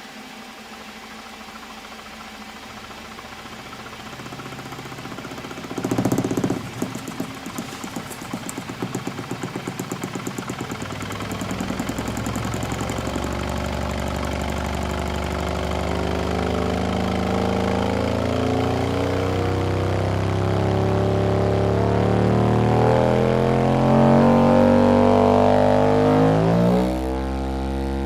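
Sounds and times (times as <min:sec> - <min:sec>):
low hum rising in pitch: 0:10.9 - 0:28.0.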